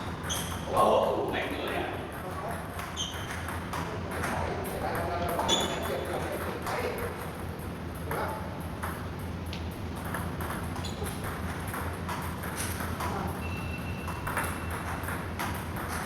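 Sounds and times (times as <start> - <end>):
shoe squeaking on floor: 0.0 - 0.7, 2.9 - 3.5, 5.4 - 6.0, 10.8 - 11.2, 13.4 - 14.9.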